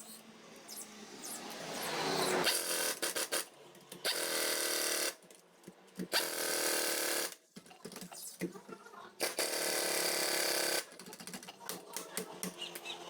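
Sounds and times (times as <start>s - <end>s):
pneumatic impact wrench: 1.8s - 5.2s, 6.0s - 7.3s, 9.2s - 10.8s.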